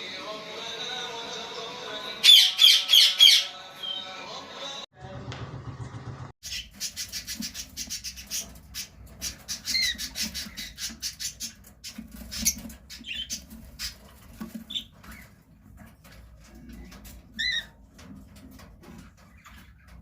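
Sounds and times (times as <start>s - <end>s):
parakeets chattering: 2.2s - 4.1s, 6.4s - 15.4s.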